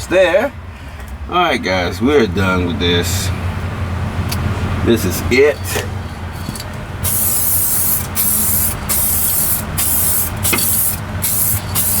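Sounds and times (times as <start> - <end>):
spray paint can hissing: 7.0 - 12.0.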